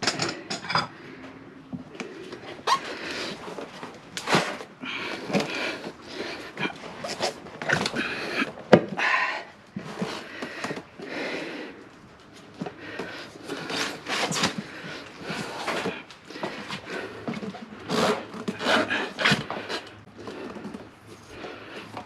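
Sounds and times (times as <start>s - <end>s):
rubber tire scraping against rim: 13.4s - 21.8s.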